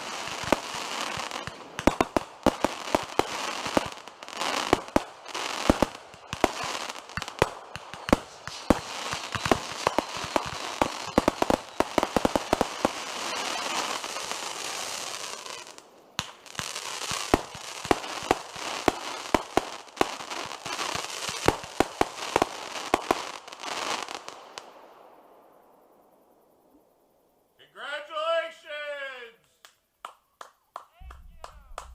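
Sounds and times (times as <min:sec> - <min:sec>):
fireworks bangs and crackling: 0:00.0 - 0:24.8.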